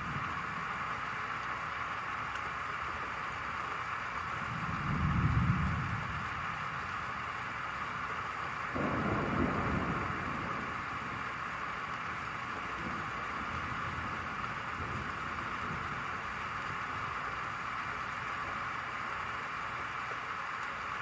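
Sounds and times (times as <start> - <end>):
low rumble of thunder: 0.0 - 1.2, 4.3 - 19.3
steady rain falling: 0.0 - 21.0.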